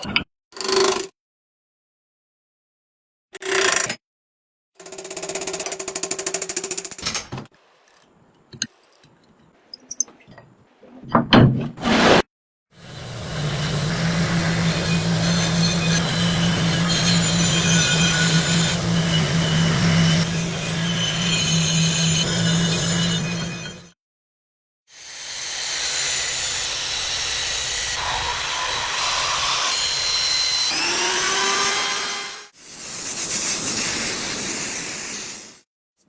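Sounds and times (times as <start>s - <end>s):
power tool grinding: 12.8s - 23.9s, 25.7s - 32.6s.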